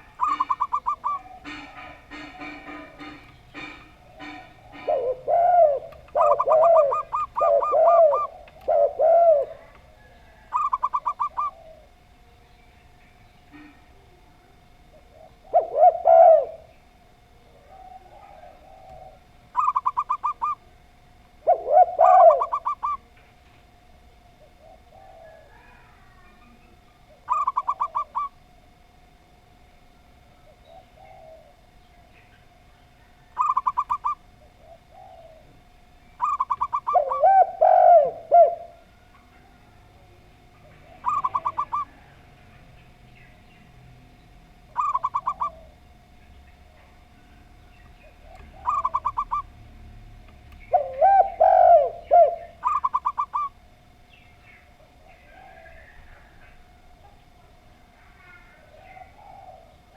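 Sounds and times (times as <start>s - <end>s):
dove rapid stuttering coos: 0.0s - 12.2s, 13.5s - 23.2s, 24.0s - 29.4s, 30.2s - 43.7s, 44.6s - 50.0s, 50.6s - 59.9s
dove low coos: 0.0s - 43.6s, 44.4s - 59.9s
faint steady tone: 0.0s - 59.9s.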